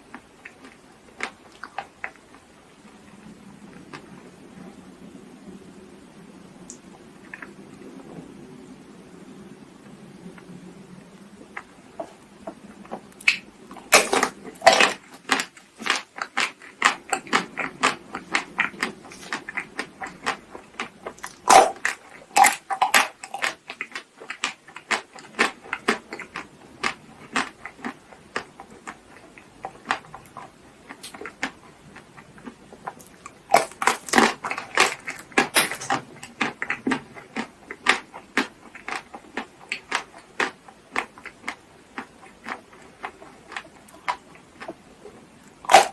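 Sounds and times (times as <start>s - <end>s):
chewing and wet mouth clicks: 0.1s - 2.4s, 13.1s - 44.8s
crackly bites: 12.9s - 44.8s.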